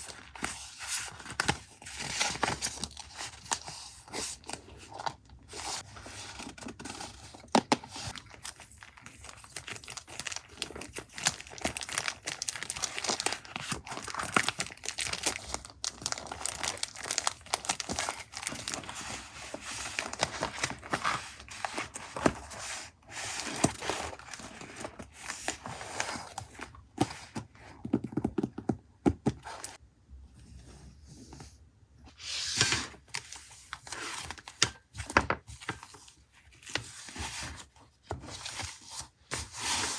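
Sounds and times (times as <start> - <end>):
paper crinkling and tearing: 0.0 - 26.4.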